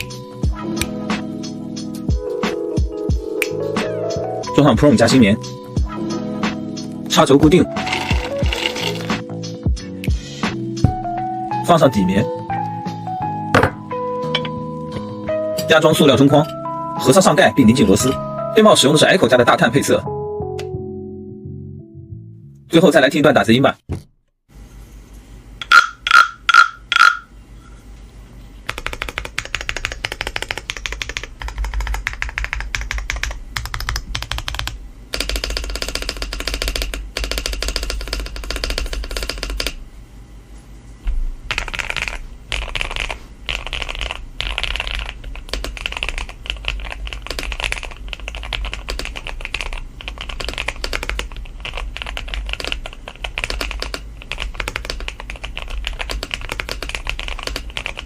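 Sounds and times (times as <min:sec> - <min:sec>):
mechanical keyboard typing: 0:07.8 - 0:09.1, 0:28.7 - 0:39.8, 0:41.5 - 0:58.0.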